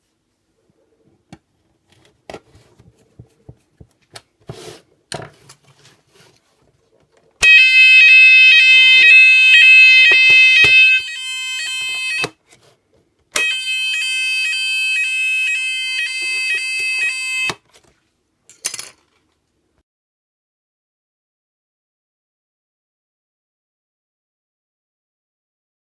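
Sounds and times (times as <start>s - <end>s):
fire alarm electronic tone: 7.4s - 12.4s, 13.4s - 17.6s.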